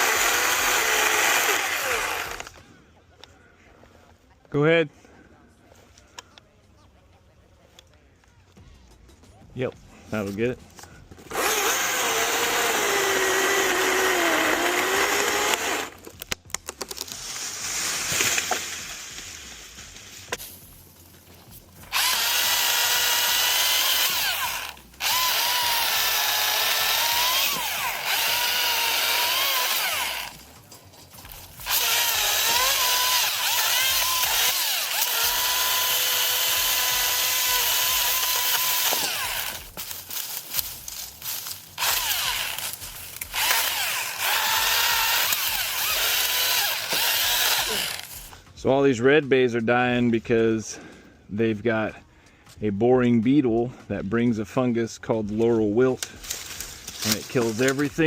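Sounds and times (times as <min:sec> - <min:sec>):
battery chainsaw cutting wood: 0:00.0 - 0:02.6, 0:11.2 - 0:16.3, 0:17.3 - 0:20.0, 0:21.8 - 0:48.4.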